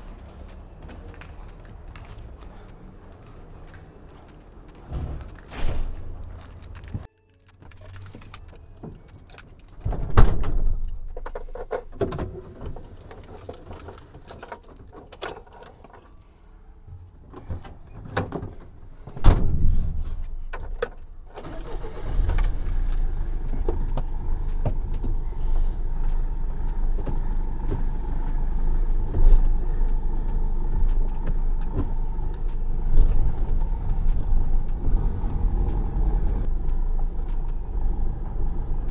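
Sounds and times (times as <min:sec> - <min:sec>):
vehicle engine rumbling: 0:00.0 - 0:07.1, 0:07.7 - 0:38.9
keys jangling: 0:00.0 - 0:16.4, 0:18.2 - 0:23.3, 0:30.8 - 0:38.9
heavy thump: 0:19.2 - 0:20.3.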